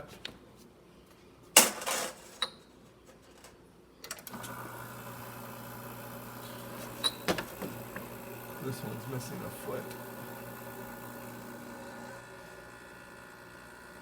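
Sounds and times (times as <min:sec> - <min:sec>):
espresso machine pump humming: 0:04.3 - 0:14.0.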